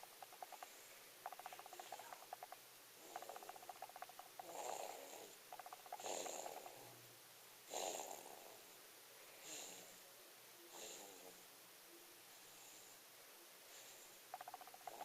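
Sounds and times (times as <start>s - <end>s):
person snoring: 4.4s - 6.7s.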